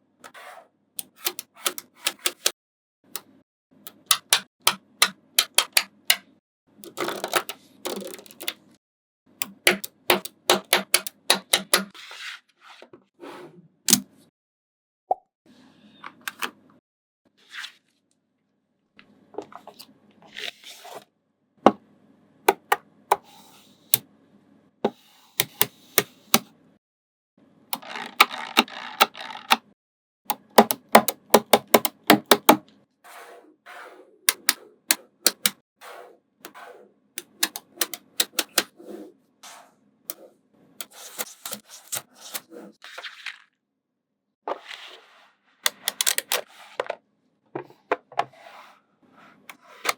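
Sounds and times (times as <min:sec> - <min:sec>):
magnetic balls clicking together: 0:03.9 - 0:06.2, 0:06.8 - 0:08.6, 0:09.4 - 0:11.9, 0:27.8 - 0:29.7, 0:35.2 - 0:35.6, 0:37.2 - 0:38.7
magnetic balls scraping: 0:27.8 - 0:29.6, 0:33.1 - 0:42.8.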